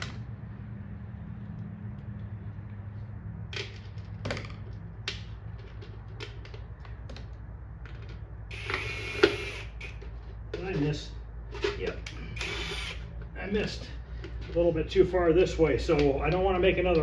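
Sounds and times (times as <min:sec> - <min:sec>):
power drill running: 0:08.5 - 0:09.9, 0:12.4 - 0:13.1.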